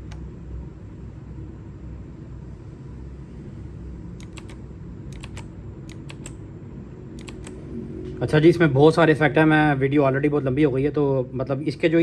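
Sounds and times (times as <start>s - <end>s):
low steady rumble: 0.0s - 12.0s
mechanical keyboard clicking: 4.2s - 6.4s, 7.2s - 7.6s.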